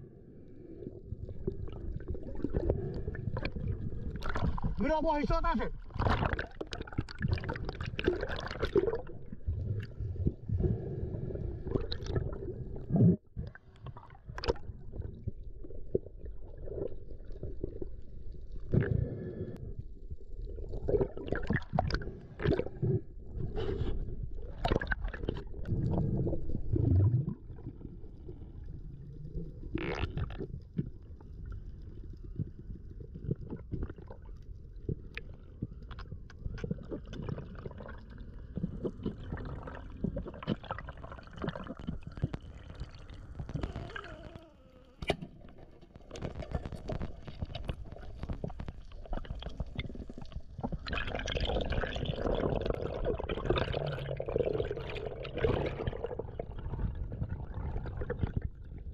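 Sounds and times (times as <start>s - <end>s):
muffled underwater rumbling and gurgling: 0.0s - 58.9s
water splashes: 1.4s - 10.3s.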